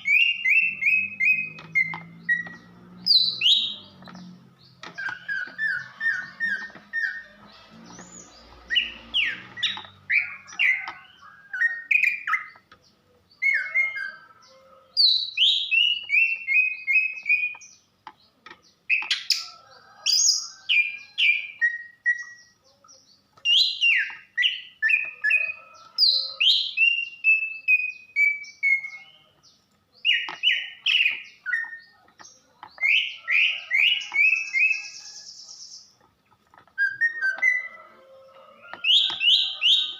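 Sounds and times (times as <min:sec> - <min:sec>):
bird downward-sliding chirps: 0:00.0 - 0:12.5.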